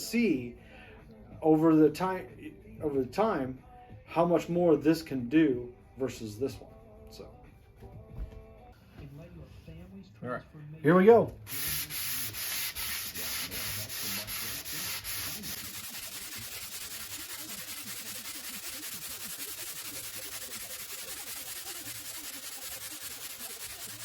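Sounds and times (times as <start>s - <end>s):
sandpaper rasping on chalkboard: 11.5s - 24.0s.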